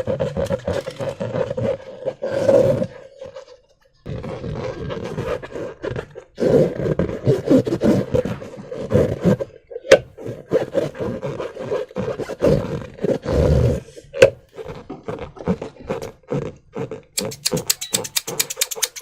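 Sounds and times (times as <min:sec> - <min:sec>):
rubber balloons rubbing: 0:00.0 - 0:19.0
sharp click: 0:17.2 - 0:19.0.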